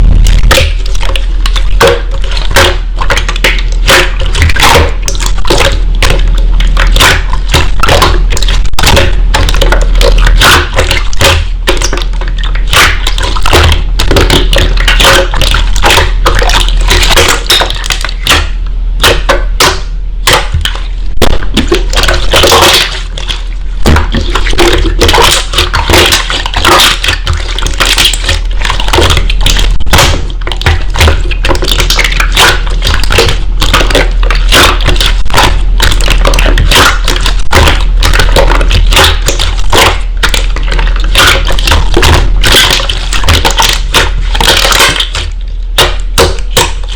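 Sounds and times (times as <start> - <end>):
low hum: 0.0 - 26.6
slime squishing with sticky pops: 0.0 - 46.9.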